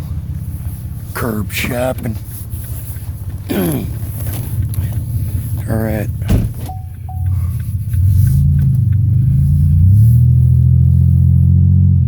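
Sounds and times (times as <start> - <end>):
car engine accelerating: 0.0 - 12.0
short high beeps: 6.7 - 7.4.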